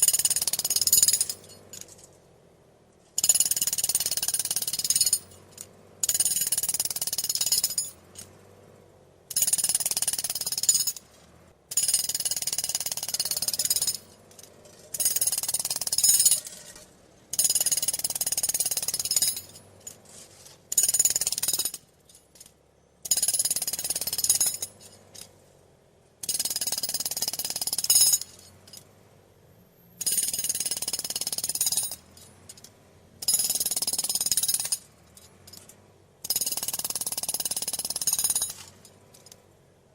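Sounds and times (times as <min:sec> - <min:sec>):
jackhammer hammering: 0:00.0 - 0:02.0, 0:03.2 - 0:08.3, 0:09.3 - 0:11.0, 0:11.7 - 0:14.2, 0:14.9 - 0:20.0, 0:20.7 - 0:21.9, 0:23.0 - 0:25.3, 0:26.2 - 0:28.8, 0:30.0 - 0:39.4.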